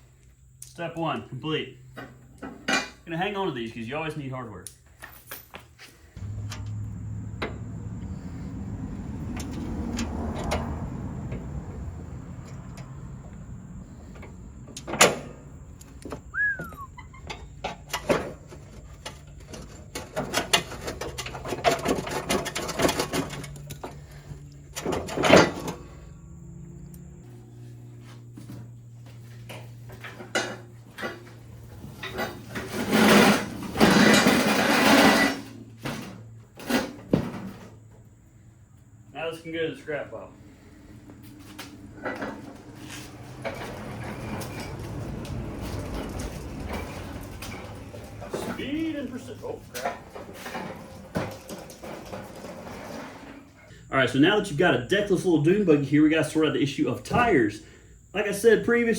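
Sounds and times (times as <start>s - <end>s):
metal clanks and knocks: 1.9s - 3.1s, 6.2s - 8.4s, 13.8s - 26.1s, 29.4s - 38.0s, 41.9s - 48.8s, 49.7s - 53.6s
metal deck scraping: 5.9s - 26.2s, 27.1s - 38.3s, 40.4s - 53.8s
short squeak: 16.3s - 17.5s.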